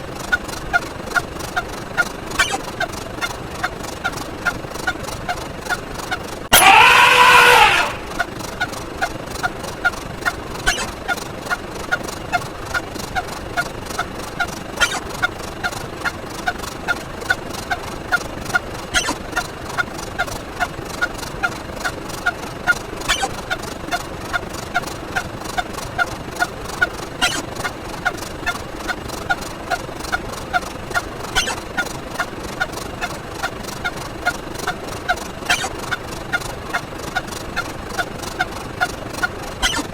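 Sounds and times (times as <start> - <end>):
sharp click: 2.0 - 3.4, 14.8 - 15.1, 19.0 - 19.5, 23.1 - 23.4, 27.2 - 28.6
downward pitch-bending effect: 6.5 - 8.2, 19.0 - 19.2, 23.1 - 23.4, 27.2 - 27.5, 31.4 - 31.6, 35.5 - 35.8, 39.6 - 39.9
short sound effect clips: 39.6 - 39.9.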